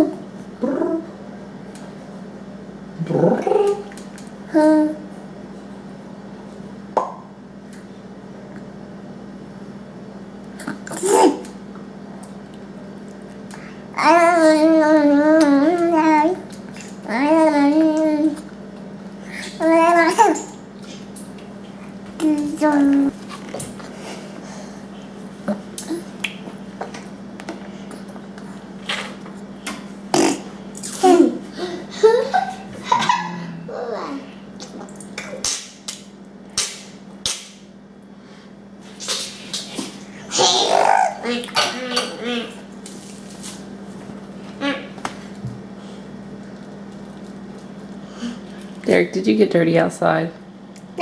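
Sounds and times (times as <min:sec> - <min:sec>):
steady low hum: 0:00.0 - 0:51.0
child making funny vocal noise: 0:40.3 - 0:42.6
squeaky voiced sounds: 0:40.3 - 0:42.6.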